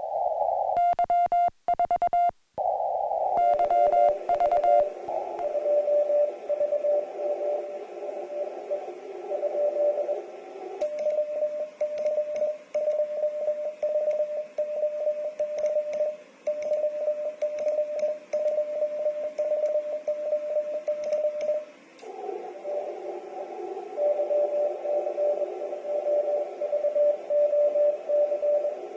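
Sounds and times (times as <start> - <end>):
radio receiver hiss: 0.0 - 5.6
morse code tone: 0.8 - 2.3, 3.4 - 4.9.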